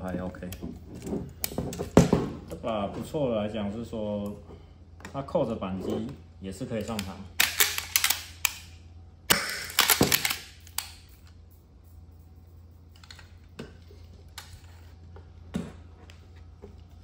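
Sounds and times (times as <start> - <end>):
air gun action clacks and clicks: 6.8 - 8.7, 9.3 - 11.2.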